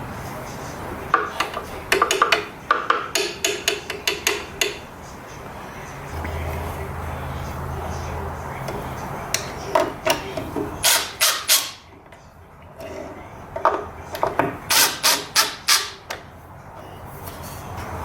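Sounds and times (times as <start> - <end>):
sharp scraping strokes on wood: 10.8 - 11.8, 14.7 - 16.0.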